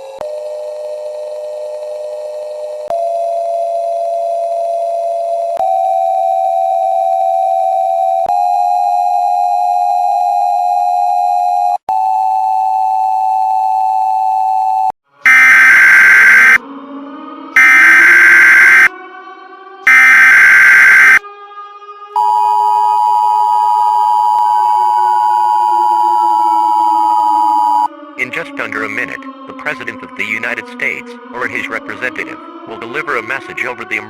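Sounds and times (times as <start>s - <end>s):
electronic drone tone: 15.3s - 16.6s, 17.6s - 19.0s, 19.9s - 21.2s, 22.2s - 27.9s
digital data bursts: 17.6s - 18.9s, 19.9s - 21.2s.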